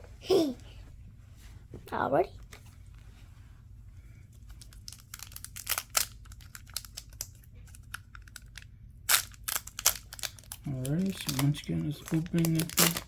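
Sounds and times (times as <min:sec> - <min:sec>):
foil wrapper crinkling: 0:04.4 - 0:13.0.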